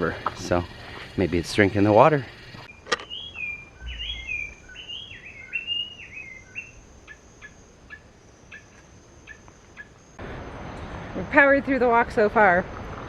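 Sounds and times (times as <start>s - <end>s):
bird singing whistled notes: 2.7s - 9.9s
short sharp bird calls: 3.1s - 6.7s.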